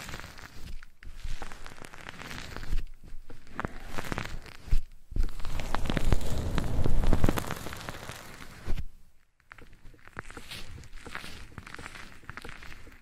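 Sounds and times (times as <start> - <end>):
scratching on microphone: 0.0 - 13.0.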